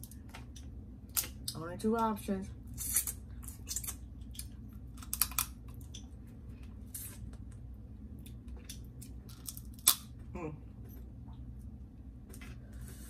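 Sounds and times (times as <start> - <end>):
crab shells cracking: 2.8 - 6.1, 8.7 - 10.1.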